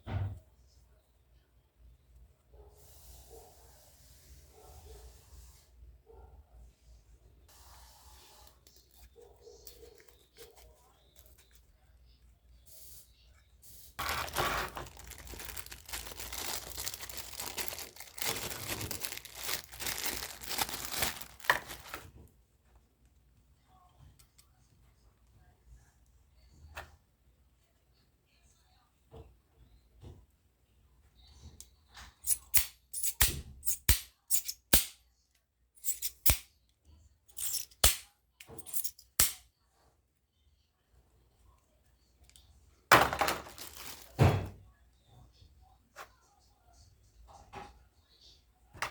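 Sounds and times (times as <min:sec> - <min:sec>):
packaging crinkling: 0:14.0 - 0:22.1, 0:43.1 - 0:44.2.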